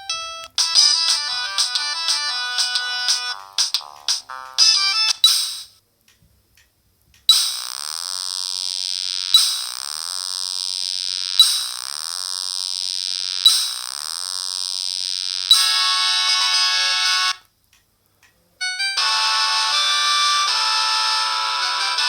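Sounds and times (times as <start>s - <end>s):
phone ringtone melody: 0.0s - 5.7s, 15.5s - 17.4s, 18.6s - 22.0s
alarm-like tone with falling sweeps: 9.4s - 9.8s, 11.4s - 11.8s, 13.5s - 13.8s, 15.5s - 17.3s.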